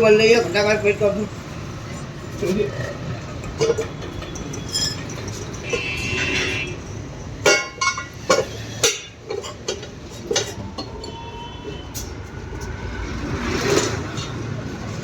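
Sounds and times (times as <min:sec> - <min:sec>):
tools clanking on wheel rim: 0:02.8 - 0:12.8, 0:13.5 - 0:15.0.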